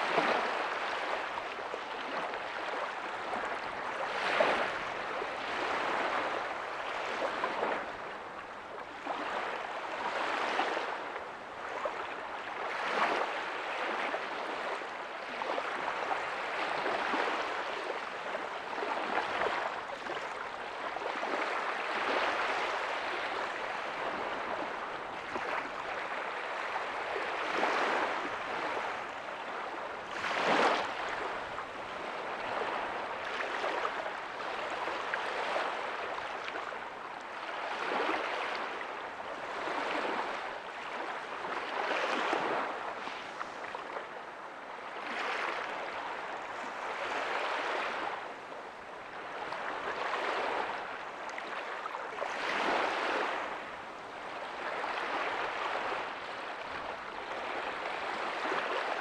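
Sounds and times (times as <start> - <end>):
small waves breaking on a beach: 0.0 - 59.0.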